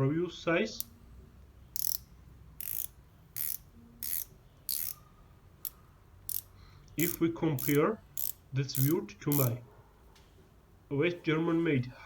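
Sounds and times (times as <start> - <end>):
ratcheting wrench clicking: 1.7 - 5.0, 5.6 - 9.6.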